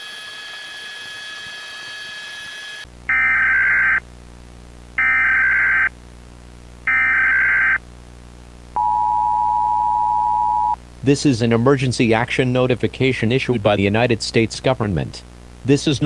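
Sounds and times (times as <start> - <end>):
low hum: 2.9 - 14.6
steady high electronic tone: 3.1 - 4.0, 5.0 - 5.9, 6.9 - 7.8, 8.8 - 10.8
warbling digital data tones: 3.1 - 4.0, 5.0 - 5.9, 6.9 - 7.8.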